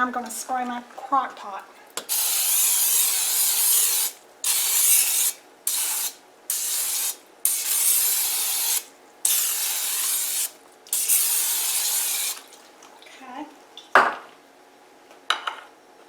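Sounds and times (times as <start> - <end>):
aerosol spray hissing: 2.1 - 12.4.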